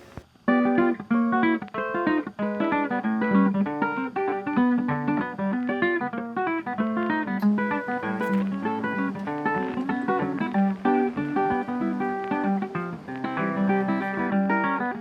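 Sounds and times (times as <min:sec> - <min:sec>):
acoustic guitar plucked notes: 0:06.9 - 0:15.0.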